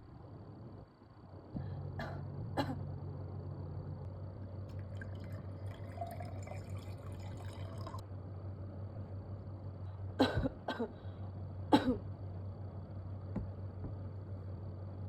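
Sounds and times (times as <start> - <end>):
low hum: 0.0 - 10.4
liquid trickling and dripping: 4.7 - 8.0.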